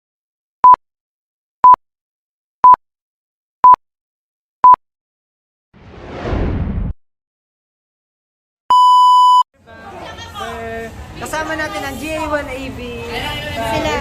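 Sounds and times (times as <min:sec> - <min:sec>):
rush of noise: 0:05.8 - 0:07.0
short electronic beeps: 0:08.7 - 0:09.4.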